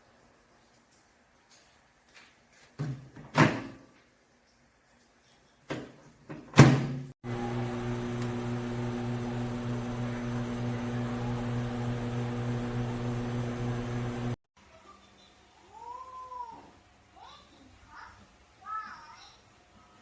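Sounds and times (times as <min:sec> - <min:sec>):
microwave oven humming: 0:07.2 - 0:14.4.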